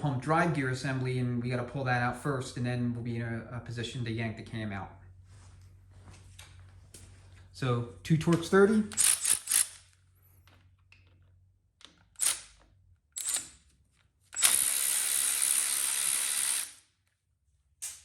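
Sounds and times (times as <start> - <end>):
cordless power driver running: 8.9 - 9.8, 14.3 - 16.8.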